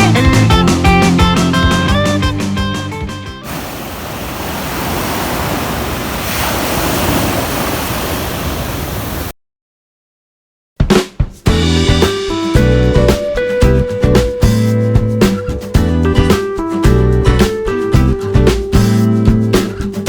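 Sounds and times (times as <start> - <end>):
sea surf: 3.4 - 9.3
wind: 3.4 - 9.3
guitar music: 11.5 - 20.0.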